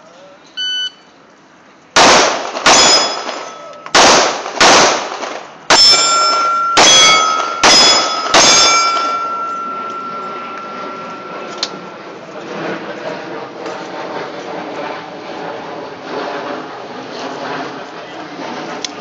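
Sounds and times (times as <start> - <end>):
steel targets ringing: 2.0 - 5.0, 5.7 - 12.0
pistol shots: 2.0 - 9.6.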